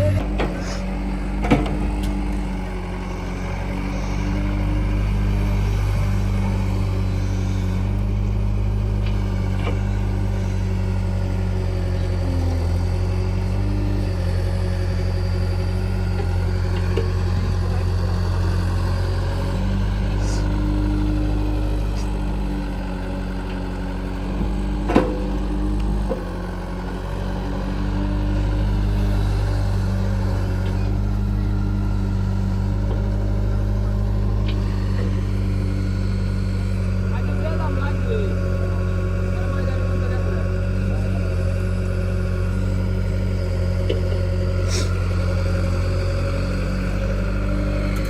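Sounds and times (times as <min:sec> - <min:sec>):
heavy diesel engine running: 0:00.0 - 0:48.0.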